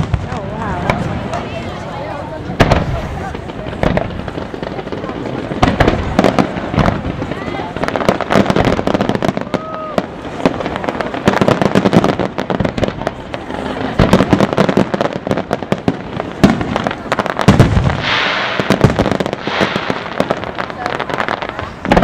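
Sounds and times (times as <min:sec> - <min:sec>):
fireworks bangs and pops: 0:00.0 - 0:22.0
hissing crackle of fireworks: 0:00.0 - 0:22.0.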